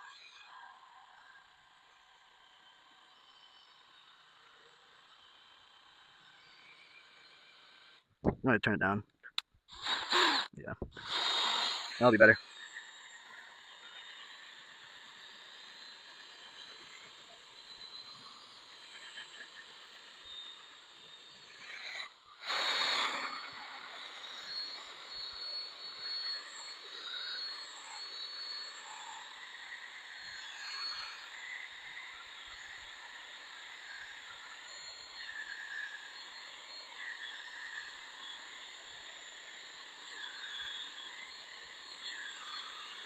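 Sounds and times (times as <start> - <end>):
pad squealing on plastic: 9.8 - 12.1.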